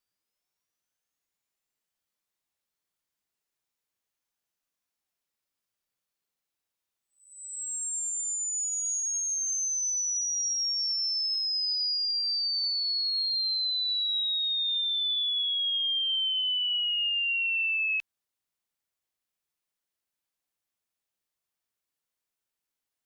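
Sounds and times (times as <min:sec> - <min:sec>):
sine tone sweeping down: 0:00.0 - 0:18.0.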